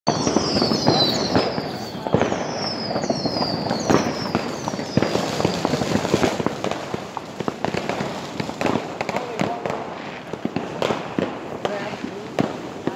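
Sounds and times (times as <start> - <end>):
falling firework whistles: 0.1 - 12.9
fireworks bangs and cracks: 0.1 - 12.9.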